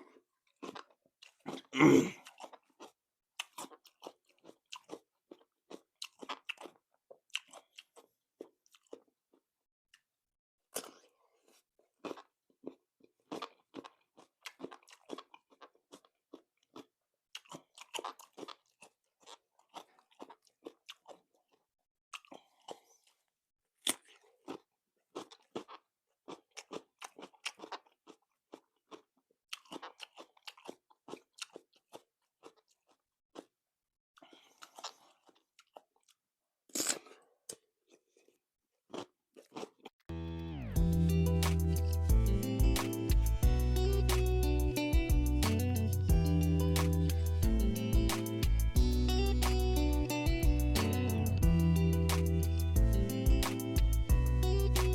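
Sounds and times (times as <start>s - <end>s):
crunching cucumber: 0.0s - 9.5s, 10.7s - 33.6s, 34.2s - 40.0s.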